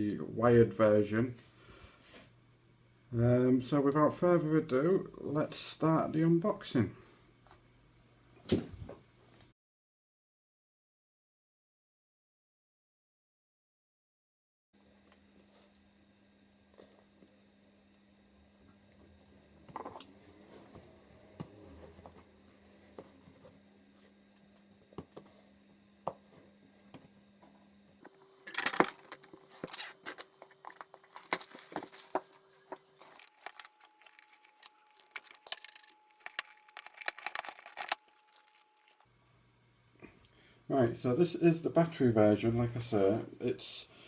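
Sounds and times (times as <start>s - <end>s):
packaging rustling and tearing: 28.5s - 39.0s.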